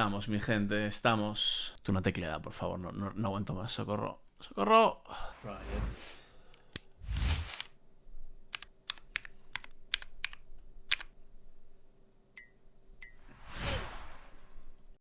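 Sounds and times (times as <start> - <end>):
short rush of noise: 7.0 - 7.7, 13.3 - 14.8
mechanical keyboard key clacks: 8.5 - 11.1.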